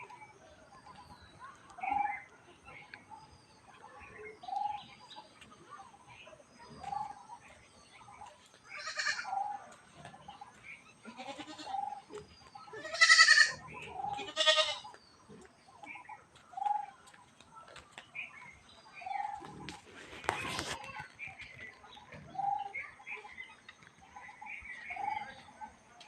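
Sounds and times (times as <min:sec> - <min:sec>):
loud harsh animal calls: 0:12.8 - 0:13.6.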